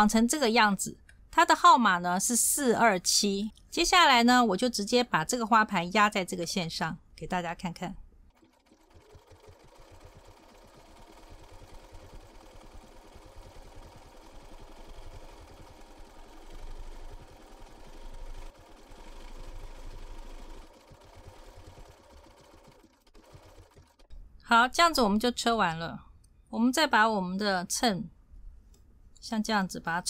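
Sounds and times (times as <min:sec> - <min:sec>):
sewing machine stitching: 0:08.3 - 0:24.2.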